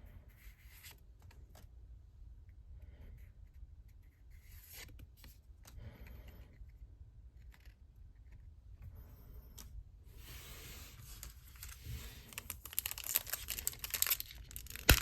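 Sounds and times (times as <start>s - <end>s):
packaging rustling scrapes: 10.2s - 15.0s
packaging clicks: 11.6s - 15.0s.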